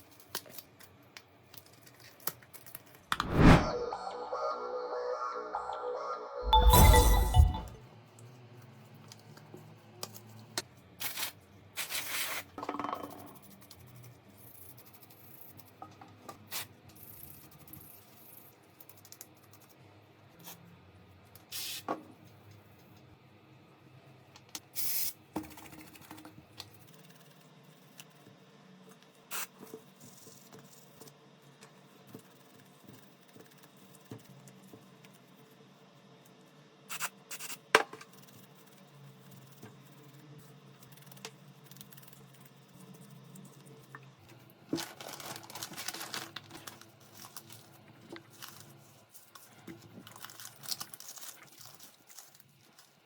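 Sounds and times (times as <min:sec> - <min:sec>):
brief scrapes: 0:03.1 - 0:03.8.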